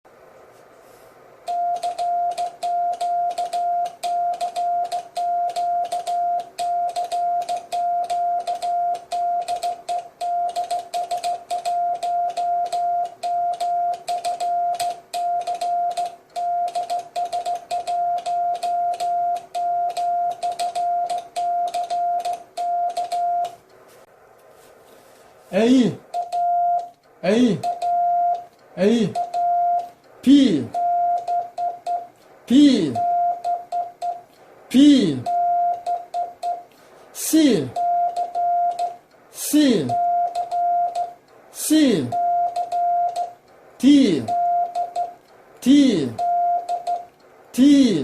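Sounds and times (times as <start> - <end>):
morse code tone: 1.5 - 23.6, 25.9 - 47.1
sharp keying clicks: 1.7 - 23.6, 26.1 - 30.2, 42.5 - 43.6.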